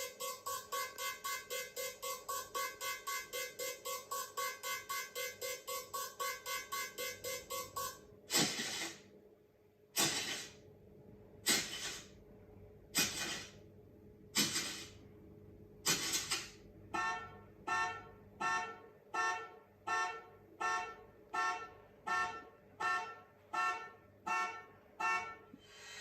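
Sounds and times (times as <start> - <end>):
rapid short pitched pulses: 0.0 - 9.1, 10.0 - 10.6, 11.4 - 12.2, 13.0 - 13.6, 14.4 - 15.0, 15.8 - 16.6
short hissing bursts: 8.3 - 9.1, 10.0 - 10.6, 11.4 - 12.2, 13.0 - 13.6, 14.4 - 15.0, 15.9 - 16.6.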